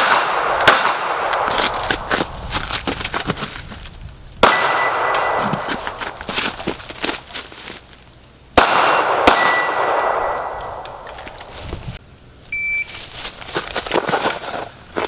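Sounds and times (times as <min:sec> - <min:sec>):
pistol shot: 0:00.0 - 0:02.0, 0:04.4 - 0:05.6, 0:08.6 - 0:11.1
steel target clanging: 0:00.0 - 0:02.1, 0:04.4 - 0:06.1, 0:08.6 - 0:11.0.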